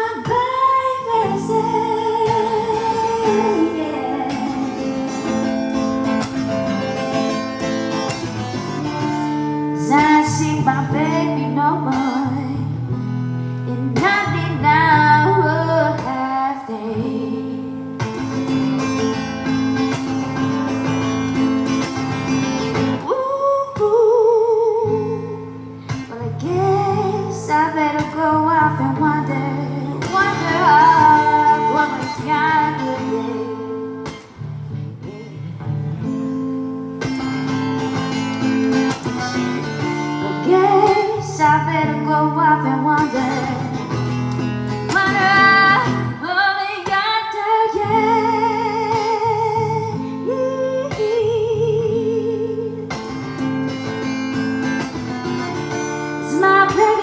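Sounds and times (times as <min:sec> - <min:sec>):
person singing: 0:00.0 - 0:07.1, 0:26.0 - 0:34.0, 0:39.2 - 0:44.0, 0:44.8 - 0:52.9
strummed acoustic guitar: 0:00.0 - 0:57.0.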